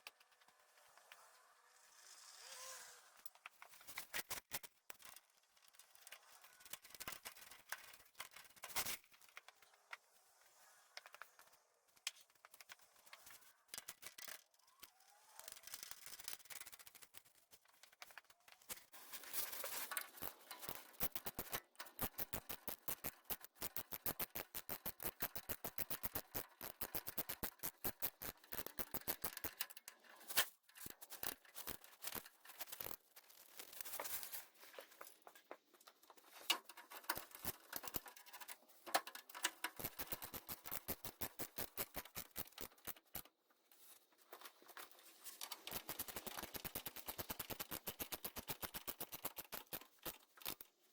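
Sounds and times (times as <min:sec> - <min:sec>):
socket ratchet clicking: 0:20.2 - 0:29.7, 0:39.4 - 0:43.3, 0:45.6 - 0:50.6.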